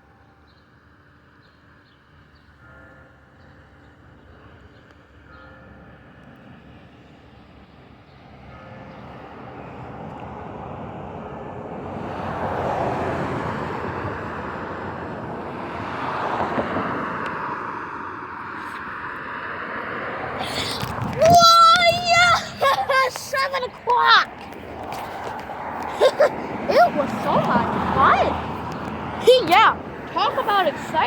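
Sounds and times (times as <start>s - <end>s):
vehicle passing: 12.1s - 31.0s.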